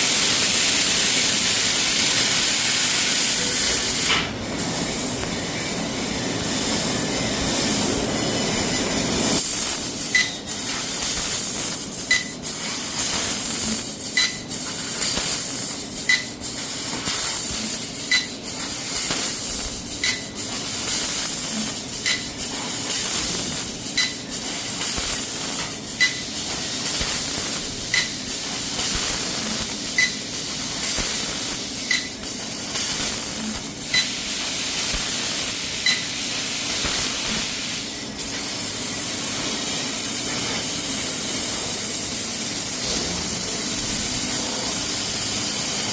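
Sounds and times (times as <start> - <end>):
click with brief tone: 10.1 - 10.4, 12.1 - 12.3, 14.2 - 14.4, 16.1 - 16.3, 22.0 - 22.3, 26.0 - 26.2, 27.9 - 28.2, 30.0 - 30.2, 31.9 - 32.1, 33.9 - 34.1, 35.8 - 36.1.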